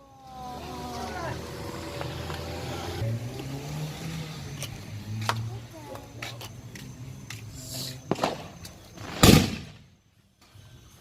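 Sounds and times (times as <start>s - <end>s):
firework cracks: 4.6s - 10.0s
firework bang: 8.0s - 9.9s.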